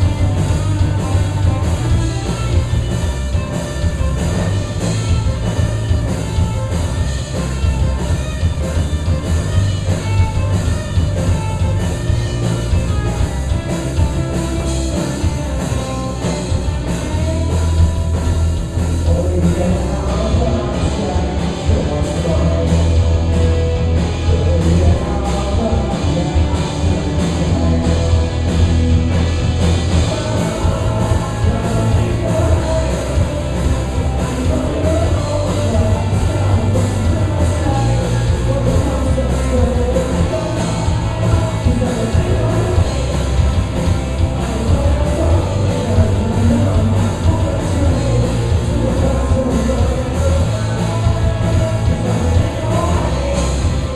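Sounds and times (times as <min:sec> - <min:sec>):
drum beat: 0:00.0 - 0:53.9
heavy bass line: 0:00.0 - 0:53.9
person singing: 0:18.9 - 0:28.8, 0:29.8 - 0:53.9.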